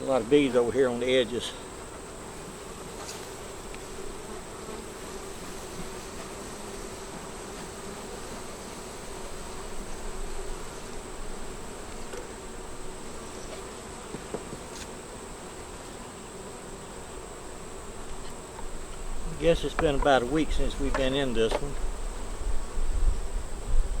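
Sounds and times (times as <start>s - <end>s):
honey bees buzzing: 0.0s - 24.0s.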